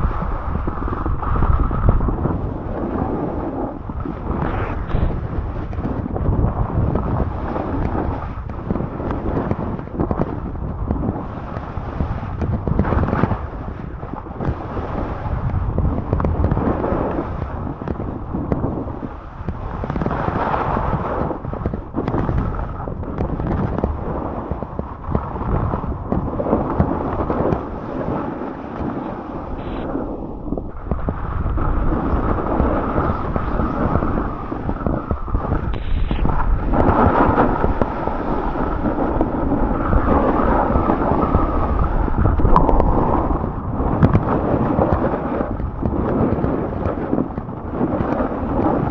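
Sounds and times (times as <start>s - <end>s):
wind buffeting microphone: 0.0s - 48.9s
snowboard scraping on snow: 0.2s - 5.7s, 26.4s - 30.1s, 31.0s - 47.2s.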